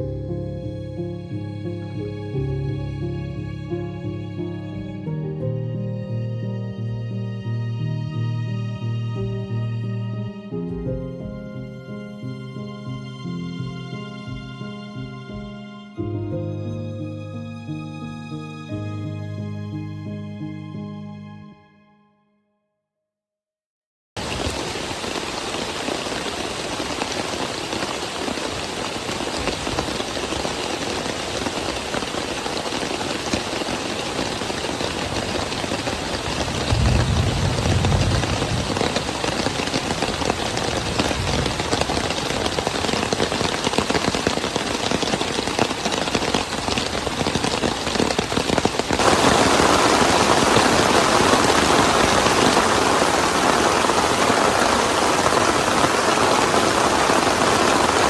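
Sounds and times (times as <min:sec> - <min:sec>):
steady rain: 0:24.2 - 0:58.0
low rumble: 0:36.7 - 0:41.7.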